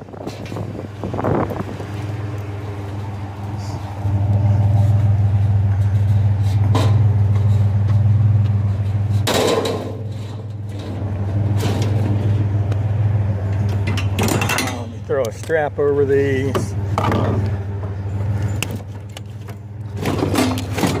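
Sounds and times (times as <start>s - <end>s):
truck engine idling: 0.0s - 21.0s
knocks and clatter: 5.8s - 12.4s, 13.5s - 15.4s, 18.6s - 21.0s.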